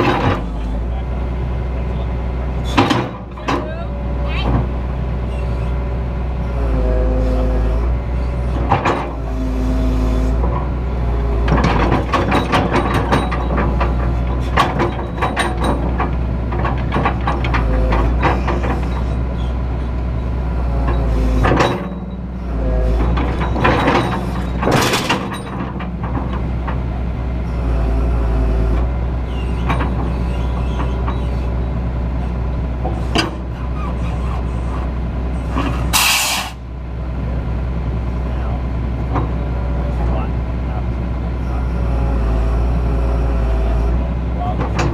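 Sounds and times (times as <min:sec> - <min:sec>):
metallic clanks and rattles: 0:00.0 - 0:00.8, 0:02.6 - 0:03.8, 0:08.6 - 0:09.2, 0:11.4 - 0:19.1, 0:20.8 - 0:22.3, 0:22.9 - 0:27.0, 0:29.6 - 0:31.5, 0:44.5 - 0:44.9
excavator engine running: 0:00.0 - 0:44.9.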